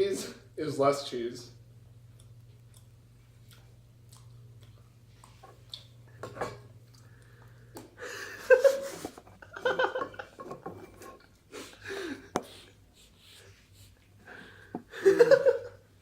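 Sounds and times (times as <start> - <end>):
low steady hum: 0.0 - 16.0
people laughing: 8.2 - 10.5, 14.9 - 15.8.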